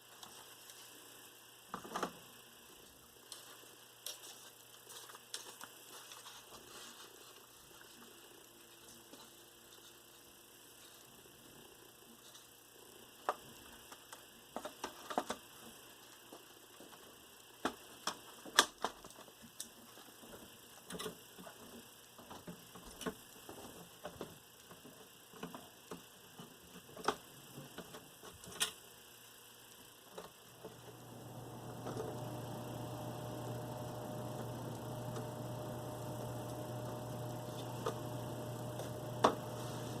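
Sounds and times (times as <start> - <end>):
vcr mechanism clicks: 30.1 - 40.0
motor whir with hum: 30.5 - 40.0.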